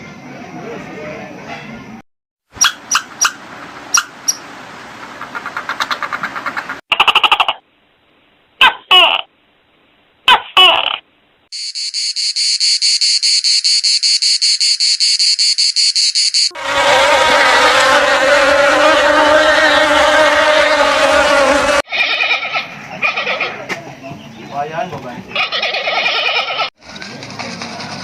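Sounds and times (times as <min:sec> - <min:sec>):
high-pitched pulsed trill: 0:11.6 - 0:17.2
dense chorus of calls: 0:16.4 - 0:23.6
animal calls: 0:16.5 - 0:23.7, 0:25.3 - 0:26.7.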